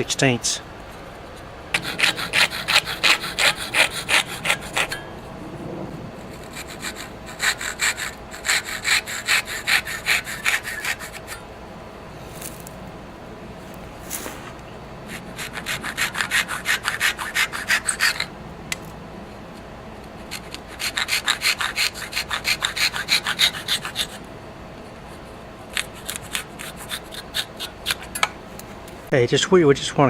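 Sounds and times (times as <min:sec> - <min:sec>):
saw cutting wood: 0:01.8 - 0:05.1, 0:06.2 - 0:11.5, 0:14.0 - 0:18.3, 0:20.2 - 0:24.3, 0:25.7 - 0:28.2.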